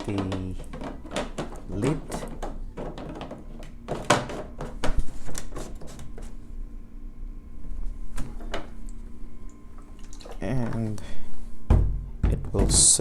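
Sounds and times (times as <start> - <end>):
plastic parts clicking and knocking: 0.0 - 5.5.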